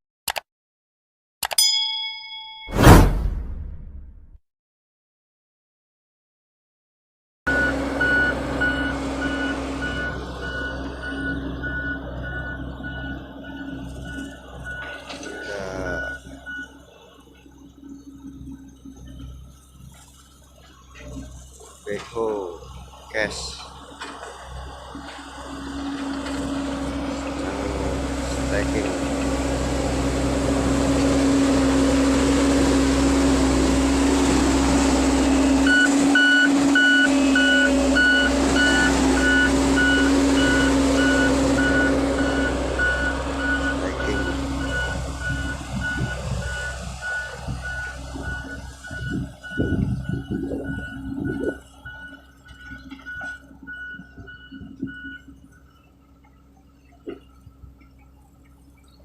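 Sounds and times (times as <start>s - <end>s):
reversing alarm beeping: 7.5s - 19.4s, 35.3s - 55.9s
diesel engine running hard: 7.5s - 59.0s.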